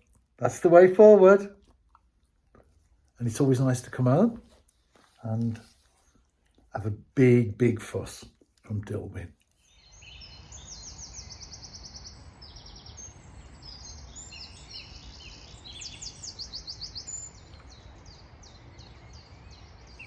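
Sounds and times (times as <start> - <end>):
songbirds singing: 6.8 - 20.0.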